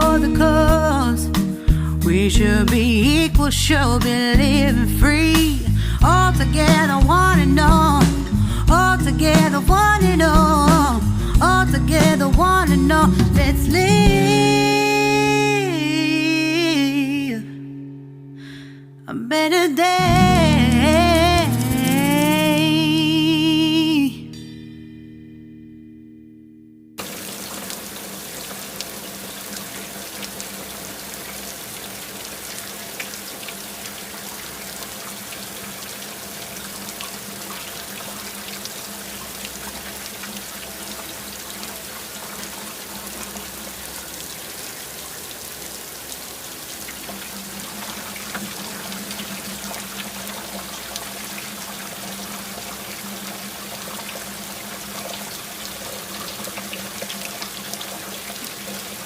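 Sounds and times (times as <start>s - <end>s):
steady rain falling: 5.0s - 15.8s, 27.0s - 59.0s.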